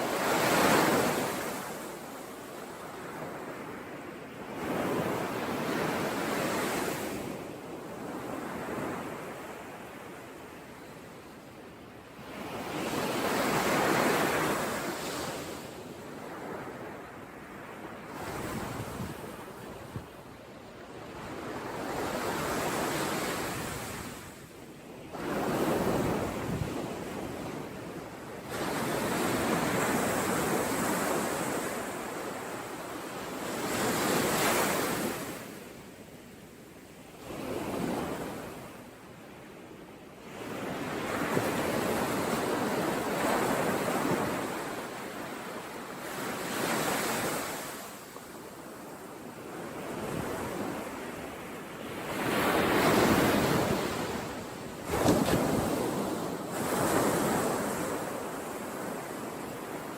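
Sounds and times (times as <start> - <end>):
sea waves breaking on shore: 0.0 - 3.7, 40.3 - 59.9.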